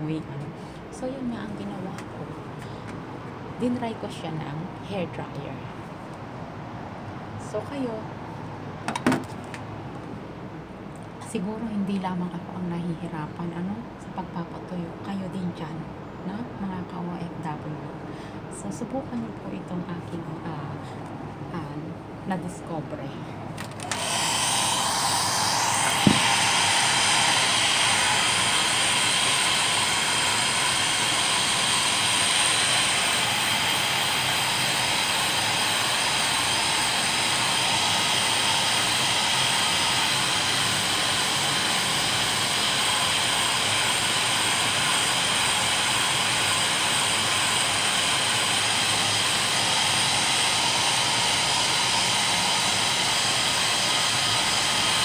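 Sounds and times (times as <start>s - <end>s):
hair dryer running: 23.6s - 55.0s.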